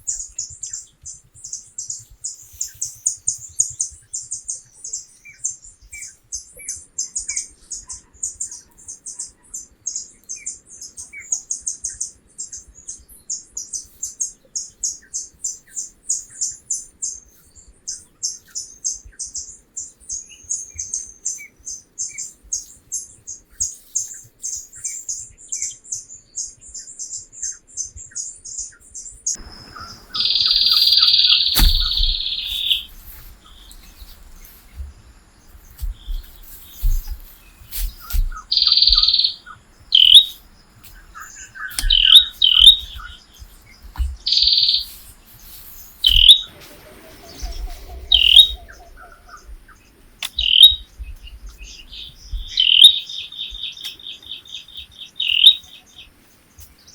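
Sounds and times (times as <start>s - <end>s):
birds chittering and chirping: 0.0s - 56.9s
soft low thuds: 29.4s - 44.3s, 47.3s - 52.6s.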